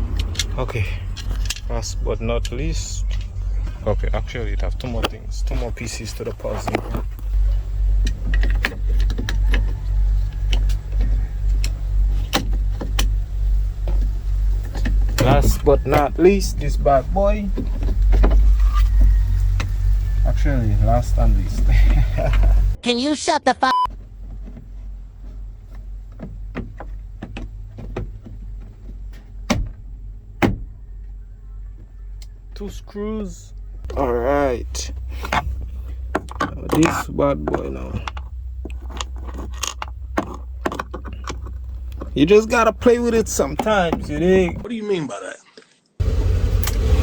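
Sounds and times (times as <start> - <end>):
tools clicking and knocking: 0.0 - 1.8, 8.0 - 13.2, 25.7 - 30.7, 35.2 - 42.2
steady low hum: 0.0 - 22.8, 23.8 - 44.7.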